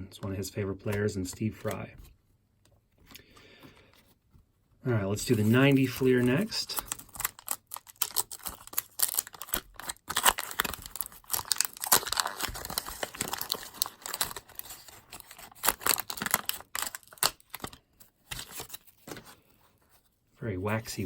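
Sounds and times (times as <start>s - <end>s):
waxed paper wrapper tearing: 5.2s - 18.8s.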